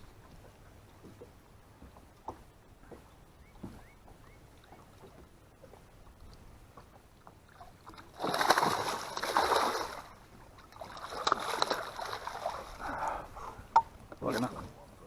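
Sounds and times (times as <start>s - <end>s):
fish thrashing and splashing water: 7.5s - 12.9s.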